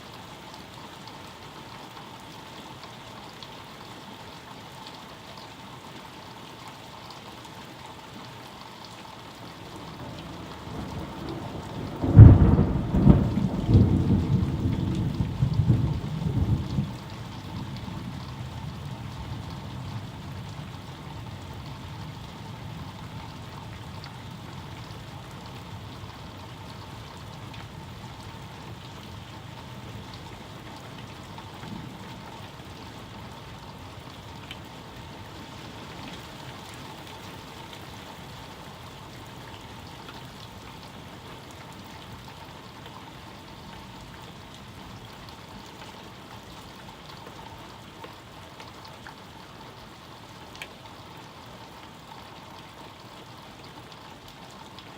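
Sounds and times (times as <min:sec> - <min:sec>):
steady rain: 0:00.0 - 0:54.9
raindrop ticks: 0:09.6 - 0:20.8, 0:23.1 - 0:38.1, 0:39.0 - 0:49.3, 0:50.5 - 0:51.0
thunder rumble: 0:10.0 - 0:18.4.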